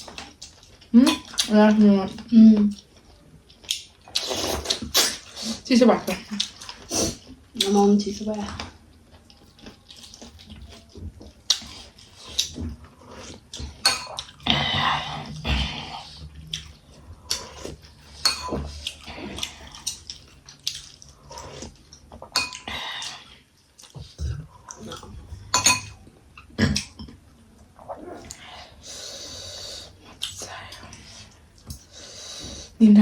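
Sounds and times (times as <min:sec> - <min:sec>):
plates and cutlery clinking: 0:25.6 - 0:26.0.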